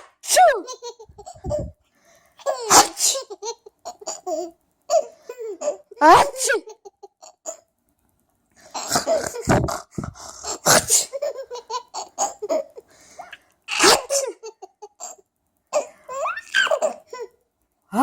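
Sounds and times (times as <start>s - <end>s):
sneeze-like laughter: 0.0s - 1.6s, 2.4s - 3.4s, 6.1s - 6.8s, 8.8s - 11.4s, 13.7s - 14.4s, 15.8s - 17.0s
person giggling: 0.5s - 1.7s, 8.8s - 10.9s.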